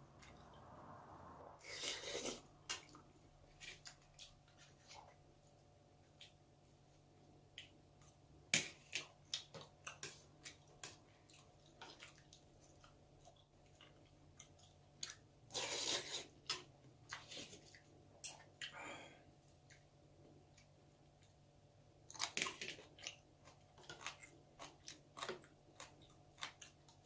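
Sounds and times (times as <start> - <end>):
wet chewing: 22.1 - 27.0.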